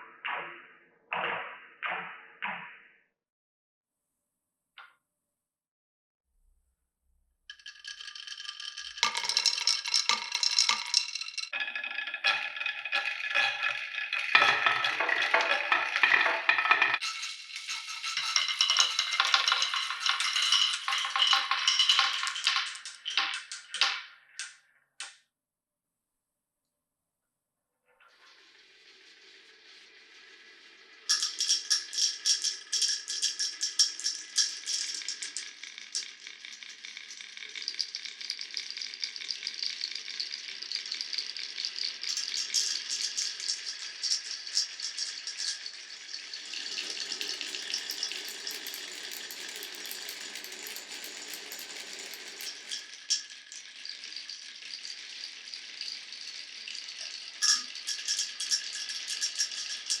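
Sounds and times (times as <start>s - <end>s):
marbles rattling down wooden run: 7.5s - 24.0s, 31.1s - 38.1s, 42.1s - 54.3s
low steady rolling sound: 44.9s - 53.0s.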